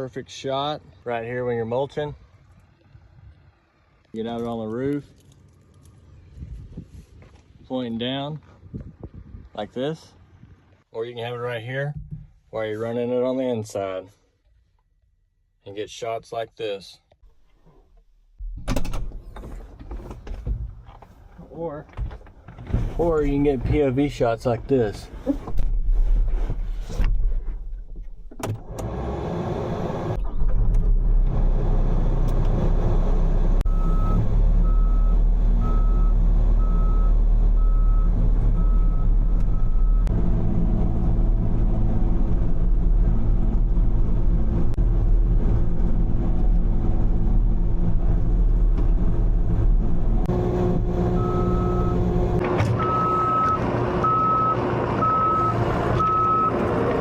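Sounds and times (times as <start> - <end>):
skid steer engine running: 32.9 - 57.0
backup alarm beeping: 52.7 - 56.6.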